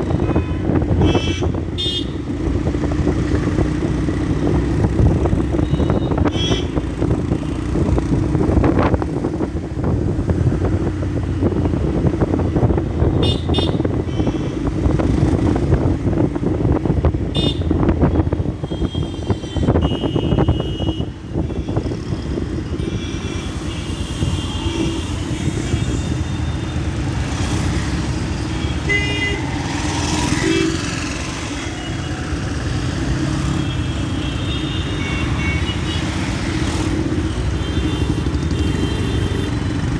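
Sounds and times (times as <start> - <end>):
vehicle horns honking: 0.0 - 2.2, 5.5 - 6.9, 13.1 - 14.9, 17.3 - 17.8, 18.5 - 26.8, 28.4 - 32.2, 33.4 - 39.9.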